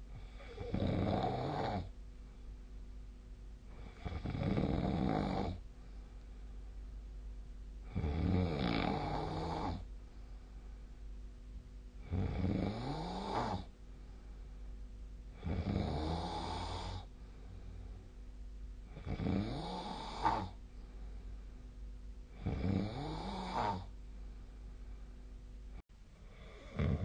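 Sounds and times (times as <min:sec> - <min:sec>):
person snoring: 0:00.2 - 0:01.9, 0:03.7 - 0:05.6, 0:07.9 - 0:09.9, 0:12.0 - 0:13.7, 0:15.4 - 0:17.1, 0:18.9 - 0:20.6, 0:22.3 - 0:23.9, 0:26.3 - 0:27.0.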